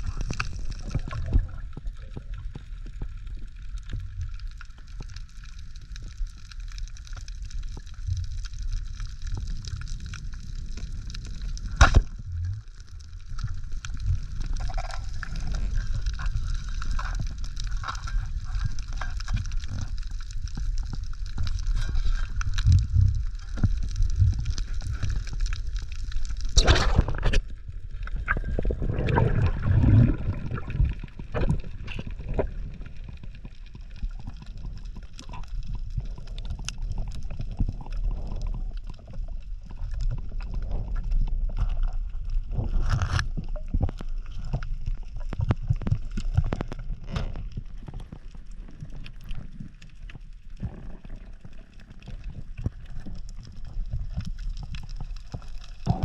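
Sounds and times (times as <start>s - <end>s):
water rushing and gurgling underwater: 0.0s - 56.0s
low rumble: 8.0s - 33.8s.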